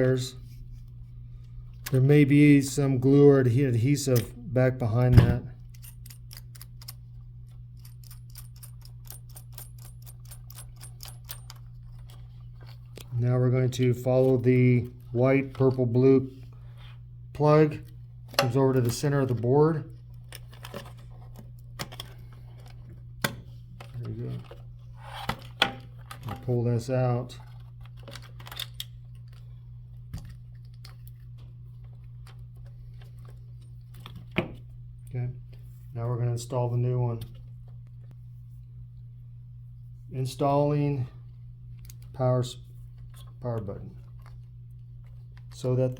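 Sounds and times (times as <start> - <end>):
steady low hum: 0.0 - 45.9.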